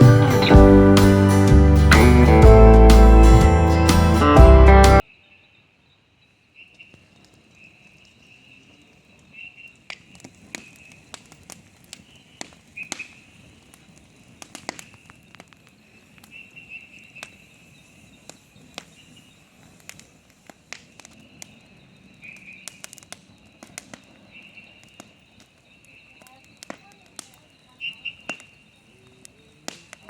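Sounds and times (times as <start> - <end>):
sharp clicks and cracks: 9.7 - 16.4, 19.6 - 27.5, 29.2 - 30.0.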